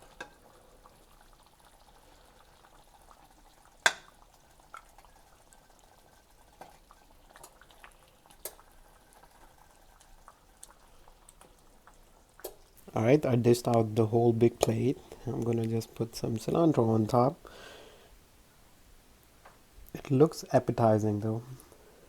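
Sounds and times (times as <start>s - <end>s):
stew being scooped: 11.4s - 17.2s.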